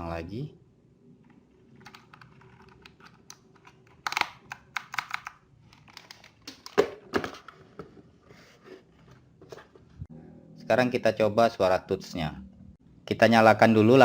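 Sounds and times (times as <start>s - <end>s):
plastic keycap clicks and snaps: 1.8s - 6.8s.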